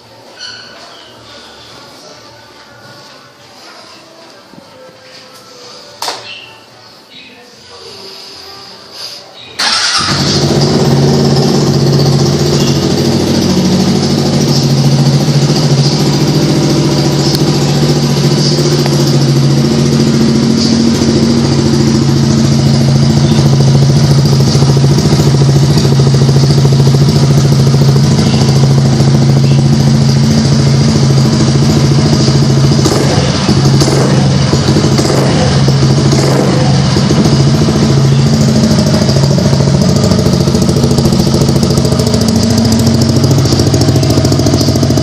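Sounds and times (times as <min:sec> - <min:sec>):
scooter engine idling: 0:09.6 - 0:45.0.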